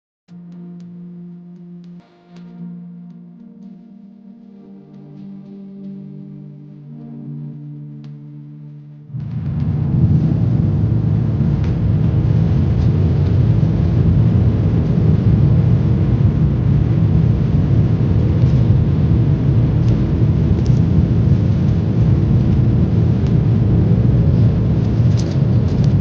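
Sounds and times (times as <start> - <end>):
jet engines rumbling: 9.1 - 26.0.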